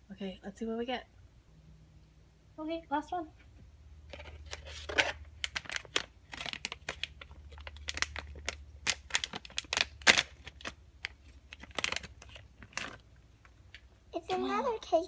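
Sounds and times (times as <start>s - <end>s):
plastic packet crinkling and tearing: 4.1s - 13.8s.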